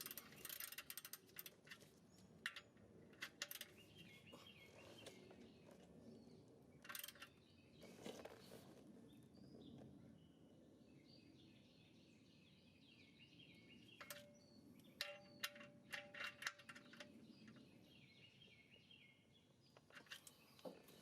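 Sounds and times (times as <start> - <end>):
faint metallic clinks: 0.0 - 5.2, 13.9 - 17.7
faint bird chirping: 0.0 - 21.0.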